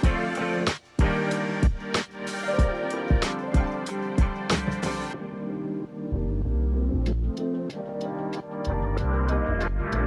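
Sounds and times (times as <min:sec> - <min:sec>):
bass line: 0:06.1 - 0:07.4, 0:08.7 - 0:10.0.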